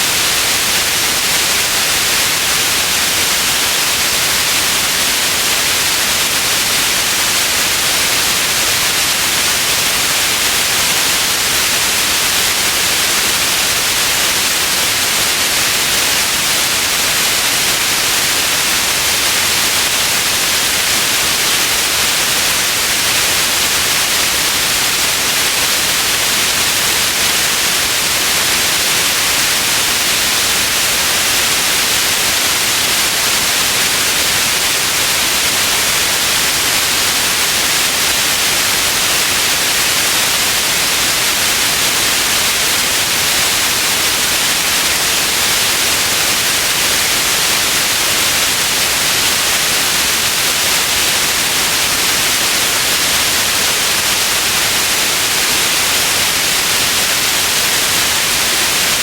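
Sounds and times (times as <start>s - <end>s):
steady white noise hiss: 0.0s - 59.0s.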